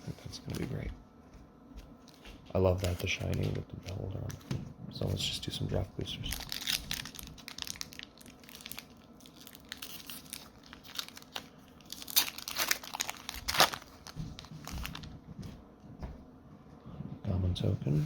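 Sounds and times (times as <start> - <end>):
foil wrapper crinkling and tearing: 6.1 - 15.2.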